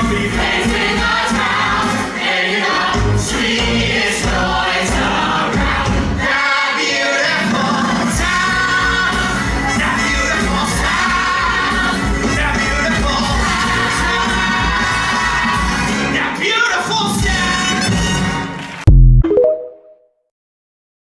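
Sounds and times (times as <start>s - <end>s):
full band accompaniment: 0.0s - 6.4s, 7.2s - 19.7s
choir singing: 0.0s - 16.4s.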